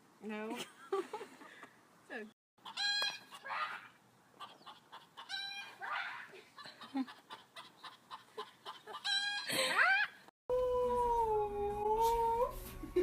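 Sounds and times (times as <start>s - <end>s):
chicken squawking: 2.6s - 10.3s.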